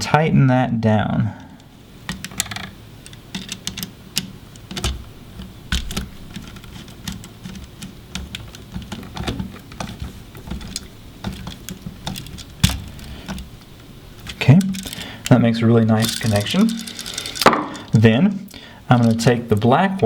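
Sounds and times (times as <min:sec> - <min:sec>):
screwdriver clicks and knocks: 0:02.1 - 0:13.5.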